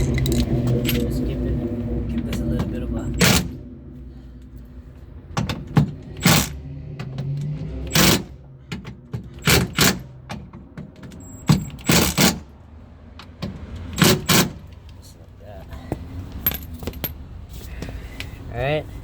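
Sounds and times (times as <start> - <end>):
metallic knocks and clanks: 5.3 - 12.5.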